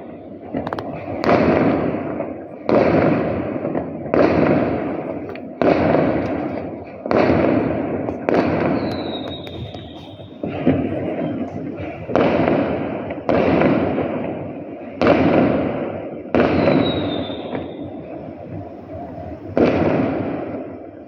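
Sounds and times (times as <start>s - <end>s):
fireworks booming: 0.0s - 21.0s
thin high whistle: 8.8s - 10.4s, 16.6s - 17.9s.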